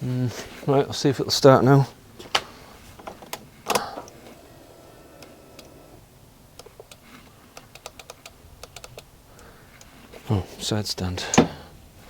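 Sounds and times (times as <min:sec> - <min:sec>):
light irregular clicks: 0:05.2 - 0:05.8, 0:06.5 - 0:10.0.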